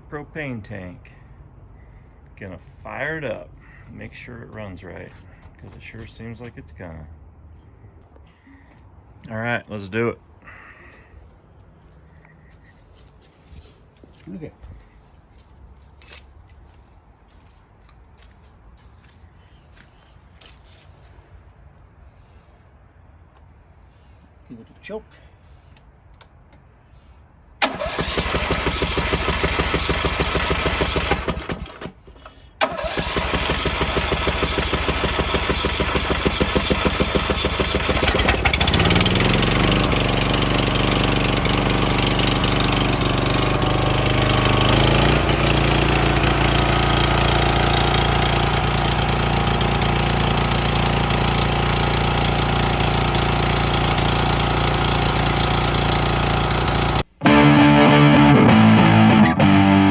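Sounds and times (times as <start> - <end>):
electric starter cranking engine: 27.6 - 59.9
generator engine running: 27.6 - 59.9.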